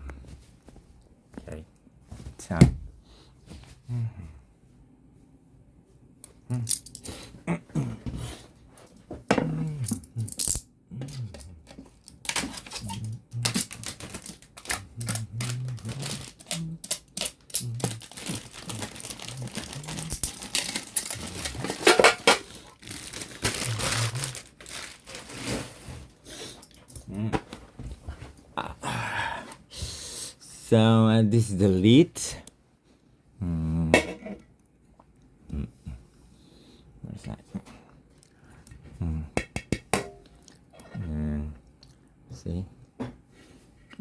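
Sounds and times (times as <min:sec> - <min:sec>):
packaging rustling and crinkling: 0:11.6 - 0:26.2.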